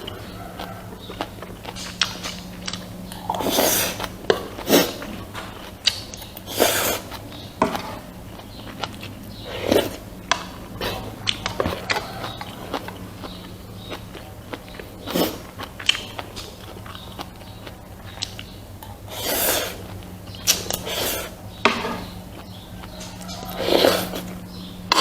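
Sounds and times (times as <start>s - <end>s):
noisy mouthfuls: 0.0s - 25.0s
steady low hum: 0.0s - 25.0s
wet chewing: 0.0s - 25.0s.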